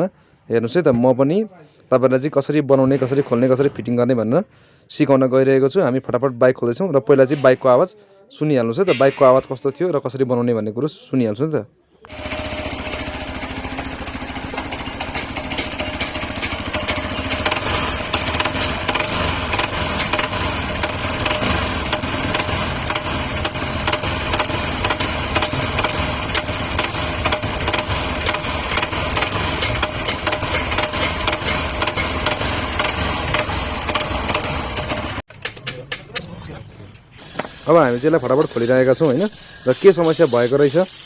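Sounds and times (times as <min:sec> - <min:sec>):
motorcycle engine running: 0:12.1 - 0:35.2
rapid engine rattle and ticking: 0:12.1 - 0:36.0.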